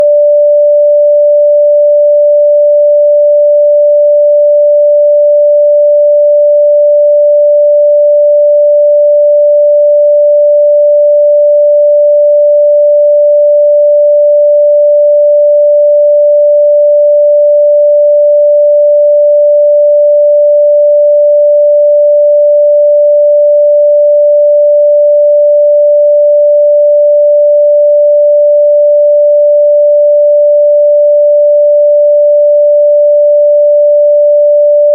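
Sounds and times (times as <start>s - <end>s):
sine-wave test tone: 0.0s - 34.9s.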